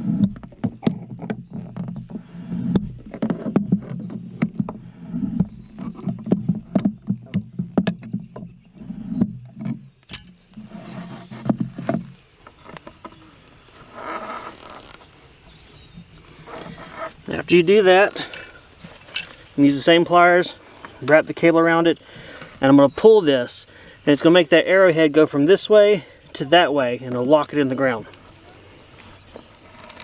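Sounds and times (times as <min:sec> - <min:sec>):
low creaking and grinding: 0:00.0 - 0:22.6, 0:27.1 - 0:30.0
metal rod clicks and knocks: 0:09.6 - 0:10.4.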